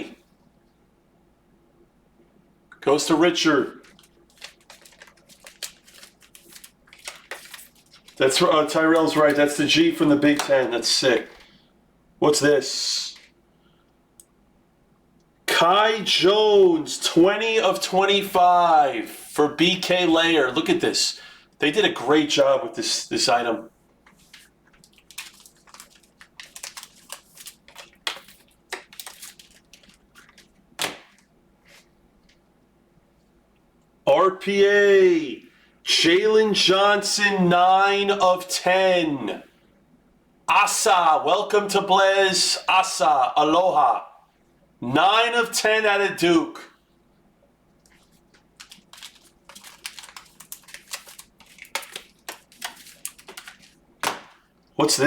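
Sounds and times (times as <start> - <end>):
plastic card sleeves rustling: 3.4 - 11.6, 13.1 - 13.4, 24.0 - 32.4, 47.8 - 54.5
plastic wrapping crinkling: 3.8 - 9.4, 24.0 - 32.4, 47.8 - 54.5.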